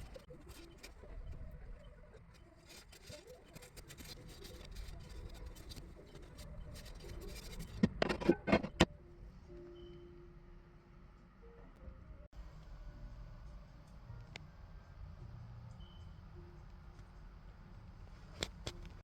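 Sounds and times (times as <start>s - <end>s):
soft rustling of handling: 0.0s - 8.3s.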